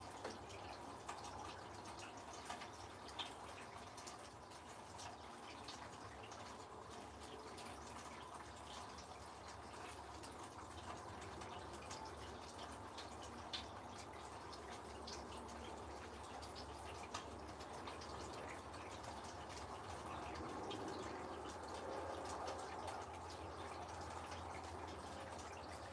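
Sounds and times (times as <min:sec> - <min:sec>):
water drips ticking: 0:00.0 - 0:25.9
rain hiss: 0:08.5 - 0:25.9.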